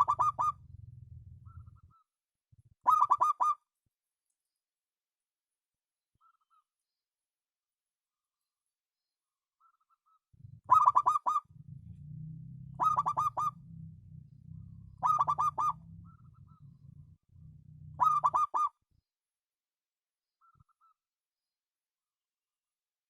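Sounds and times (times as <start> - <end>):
dove cooing: 0.0 - 2.0, 2.8 - 3.6, 10.4 - 18.8
faint low rumble: 0.0 - 2.0, 10.4 - 18.5.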